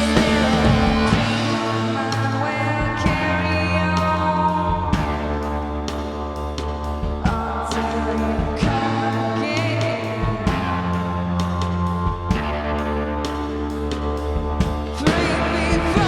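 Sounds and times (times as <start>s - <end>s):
choir-like singing: 0.0s - 2.9s, 15.0s - 16.0s
rock band playing: 0.0s - 16.0s.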